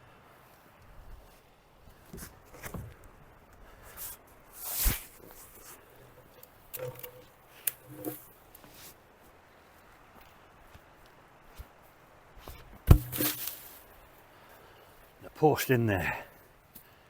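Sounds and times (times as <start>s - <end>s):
short clunks: 4.8s - 8.3s, 12.4s - 13.7s
loud thud: 12.9s - 13.4s.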